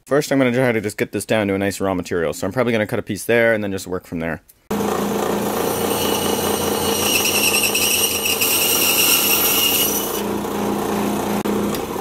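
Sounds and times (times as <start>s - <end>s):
power tool cutting wood: 4.7s - 11.8s.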